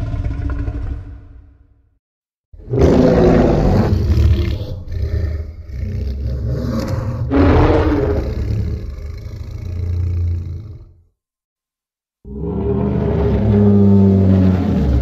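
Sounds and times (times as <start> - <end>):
giant monster roar: 2.6 - 11.0, 12.3 - 15.0.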